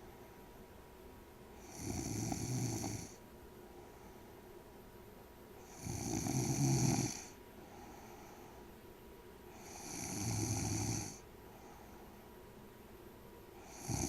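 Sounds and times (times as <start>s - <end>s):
person snoring: 1.6s - 3.2s, 5.6s - 7.4s, 9.6s - 11.2s, 13.6s - 14.0s
faint breath: 3.0s - 4.6s, 7.2s - 8.8s, 11.1s - 12.4s.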